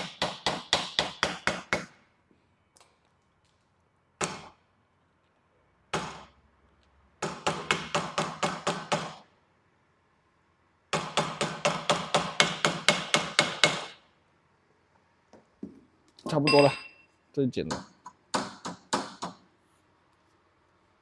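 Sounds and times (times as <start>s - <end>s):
hammer striking metal: 11.0s - 14.0s.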